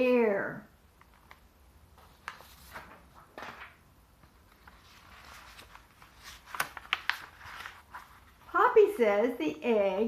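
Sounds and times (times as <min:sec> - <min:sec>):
paper book rustling and clicking: 0:00.9 - 0:08.6.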